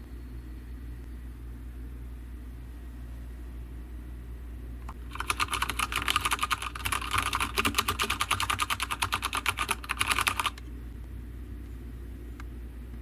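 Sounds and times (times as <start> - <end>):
typing on a mechanical keyboard: 5.0 - 10.6.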